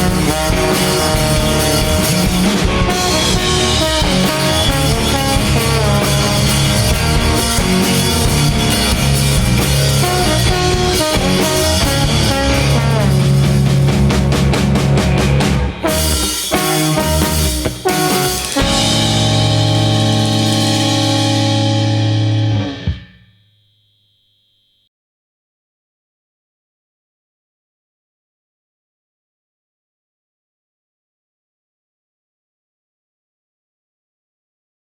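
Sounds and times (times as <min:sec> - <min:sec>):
drum hits: 0:00.0 - 0:23.2
rock band playing: 0:00.0 - 0:23.2.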